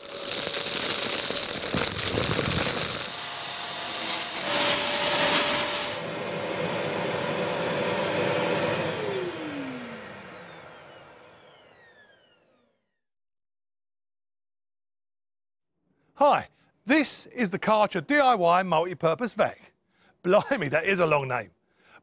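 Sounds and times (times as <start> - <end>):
motor whine spinning down: 0.0 - 3.3, 4.4 - 13.0
wet and dry vacuum cleaner running: 0.0 - 12.9.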